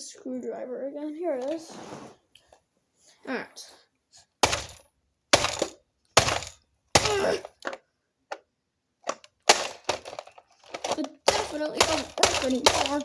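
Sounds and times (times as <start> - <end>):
screwdriver striking plastic casing: 4.4 - 8.4, 9.0 - 13.0.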